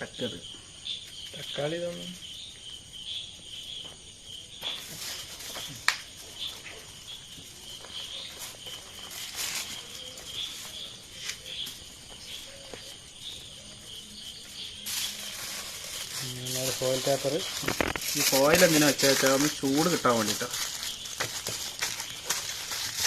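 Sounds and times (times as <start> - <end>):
crickets chirping: 0.0 - 23.0
rustles and clicks of food handling: 4.6 - 23.0.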